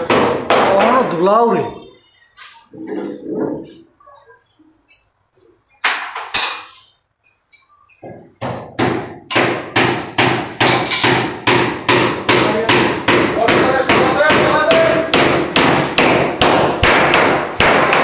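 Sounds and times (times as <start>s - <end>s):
hammer blows ringing: 8.0s - 18.0s.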